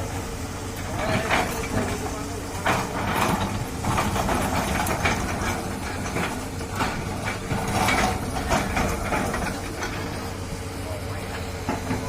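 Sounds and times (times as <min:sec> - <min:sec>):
excavator diesel engine running: 0:00.0 - 0:12.0
metal clanks and scrapes: 0:00.9 - 0:10.4.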